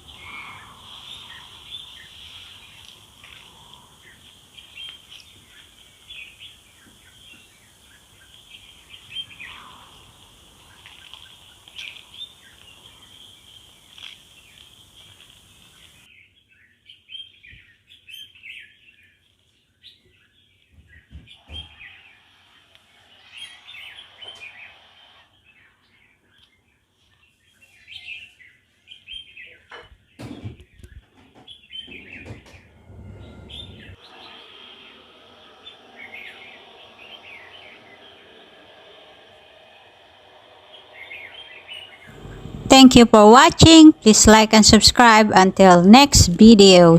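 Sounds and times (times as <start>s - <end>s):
small birds chirping: 0.0s - 29.8s.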